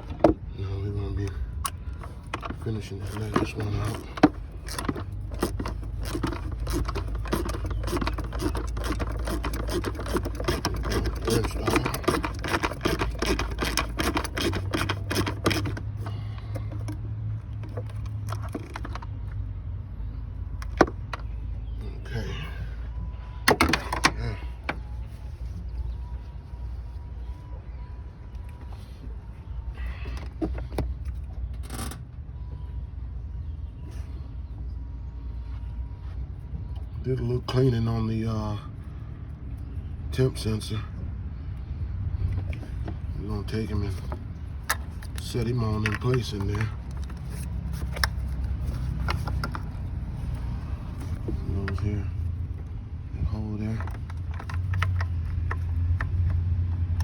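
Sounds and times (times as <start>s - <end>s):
hand ratchet clicking: 3.8s - 15.9s.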